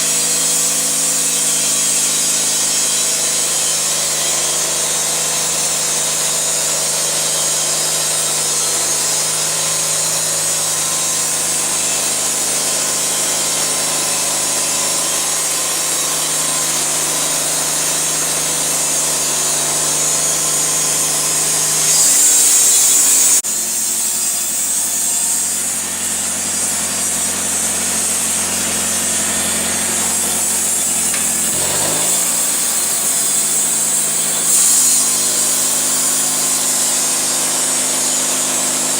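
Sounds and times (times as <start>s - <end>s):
saw blade hissing in wood: 0.0s - 38.9s
engine running steadily: 25.0s - 36.5s.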